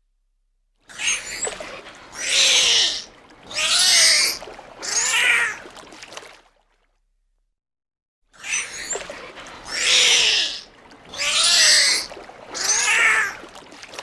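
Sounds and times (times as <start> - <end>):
dolphin whistles and squeals: 0.9 - 5.6, 8.4 - 13.4
waves washing: 1.3 - 6.3, 9.0 - 14.0.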